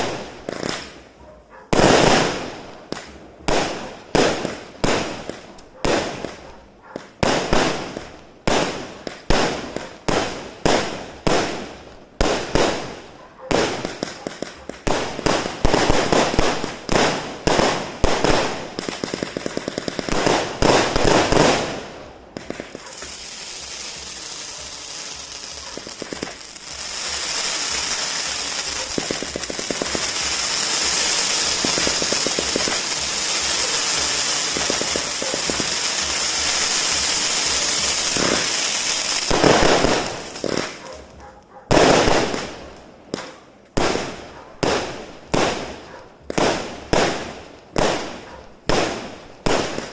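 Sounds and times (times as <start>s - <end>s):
fireworks hissing crackle: 0.0s - 1.1s, 13.7s - 44.2s
fireworks shots and bursts: 0.0s - 49.9s.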